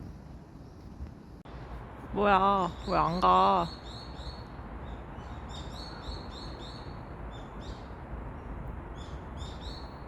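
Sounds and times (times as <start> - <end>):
birds chirping: 2.2 - 10.0.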